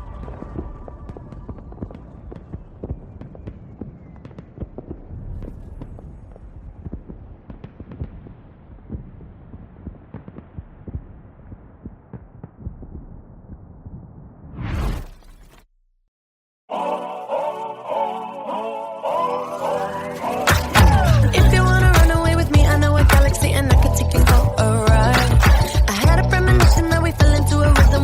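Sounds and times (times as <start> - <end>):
low thumps: 4.8 - 14.8.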